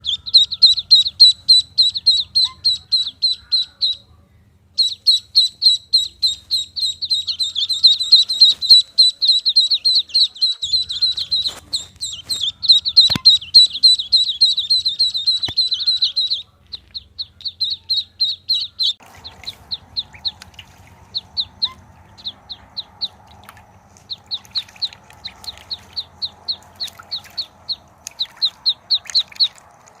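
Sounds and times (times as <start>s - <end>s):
duckling peeping: 0.0s - 4.1s, 4.8s - 29.7s.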